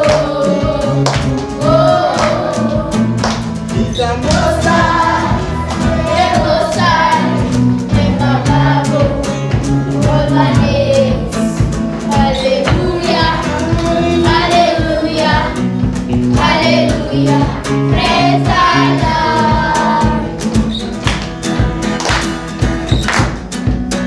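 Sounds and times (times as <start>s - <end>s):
children's choir singing: 0.0s - 20.7s
backing music with bass and beat: 0.0s - 24.0s
sharp drum hits: 11.6s - 23.9s.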